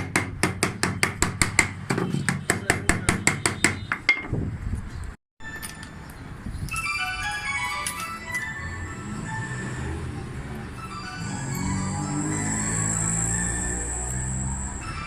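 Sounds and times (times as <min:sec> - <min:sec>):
music: 0:05.4 - 0:15.0.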